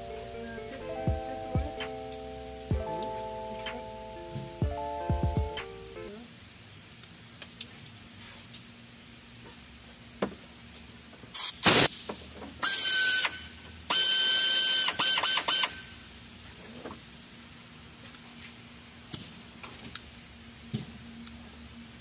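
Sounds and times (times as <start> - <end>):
tool clicks and clank: 11.4 - 15.8
handheld power tool whining: 12.6 - 15.9.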